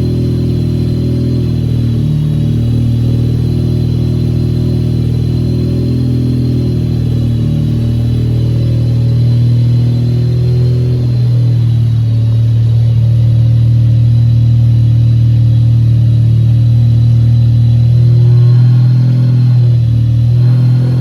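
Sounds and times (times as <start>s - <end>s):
rotary engine humming with whine: 0.0s - 21.0s.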